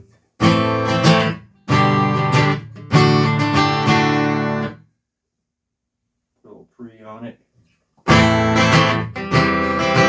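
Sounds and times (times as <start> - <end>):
amplified acoustic guitar strumming: 0.0 - 4.8, 8.0 - 10.0.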